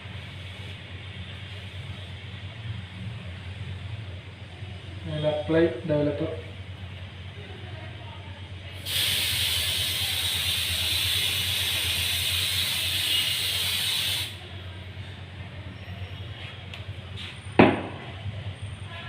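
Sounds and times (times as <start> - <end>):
aerosol can spraying: 8.8 - 14.4.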